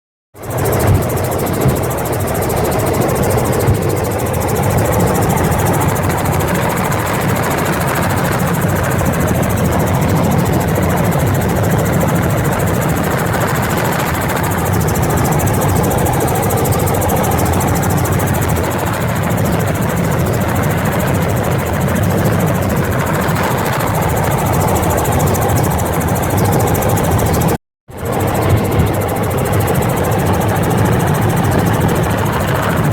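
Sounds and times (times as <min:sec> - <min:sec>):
helicopter engine and rotor drone: 0:00.4 - 0:32.9.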